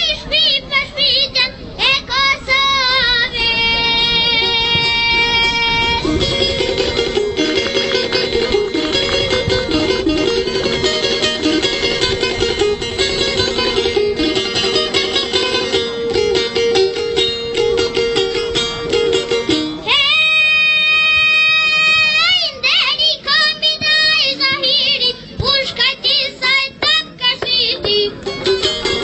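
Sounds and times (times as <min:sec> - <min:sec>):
child singing: 0:00.0 - 0:06.0, 0:19.8 - 0:28.2
plucked string melody: 0:00.0 - 0:29.0.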